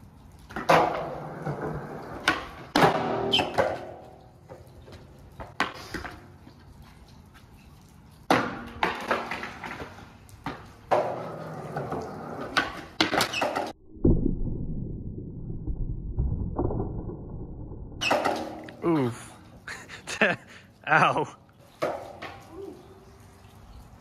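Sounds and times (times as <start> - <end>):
skateboard rolling on concrete: 0.2 - 13.8, 18.0 - 20.0, 21.6 - 24.0
skateboard tail popping and landing: 0.5 - 4.2, 8.3 - 14.3, 18.0 - 18.8.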